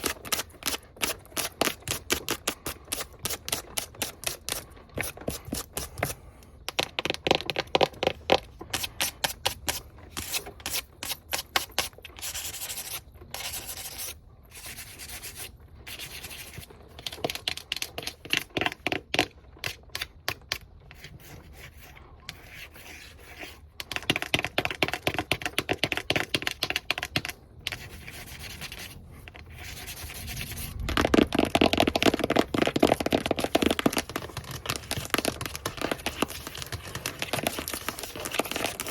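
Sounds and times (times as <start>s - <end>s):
fingernails scratching and rubbing: 7.1s - 17.2s, 26.2s - 38.9s.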